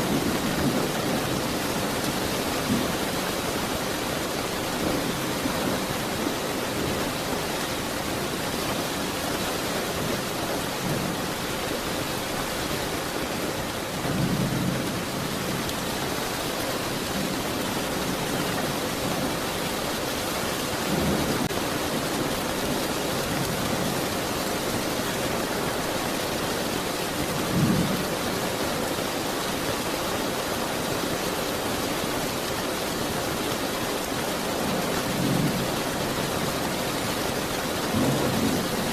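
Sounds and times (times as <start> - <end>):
steady rainfall: 0.0 - 38.9
low rumbles of thunder: 14.0 - 15.7.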